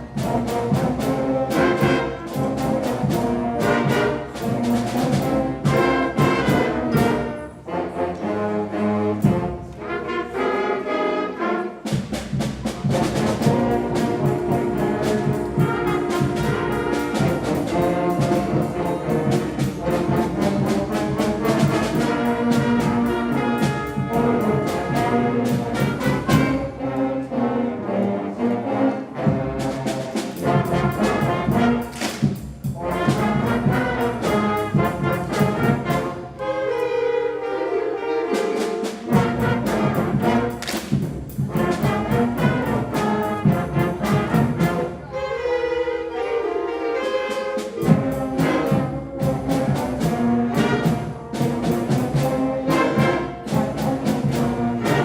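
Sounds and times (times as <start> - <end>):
percussion beat: 0.0 - 7.4, 11.8 - 26.7, 29.3 - 36.4, 38.7 - 45.0, 47.4 - 55.0
concert band playing: 0.0 - 55.0
trombones playing melody: 0.0 - 55.0.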